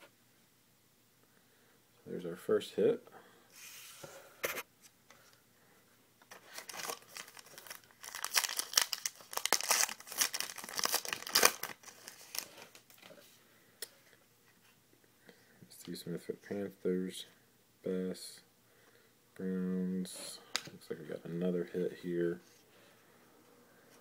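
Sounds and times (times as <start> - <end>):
foil wrapper tearing and crinkling: 6.5 - 12.8.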